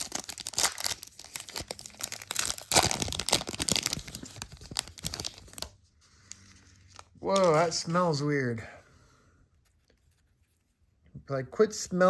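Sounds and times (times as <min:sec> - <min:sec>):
foil pack tearing and crinkling: 0:00.0 - 0:05.6.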